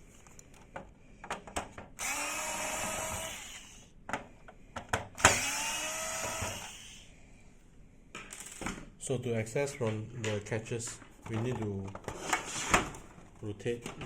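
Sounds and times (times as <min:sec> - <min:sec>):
electric screwdriver running: 0:02.0 - 0:03.9, 0:05.2 - 0:07.1.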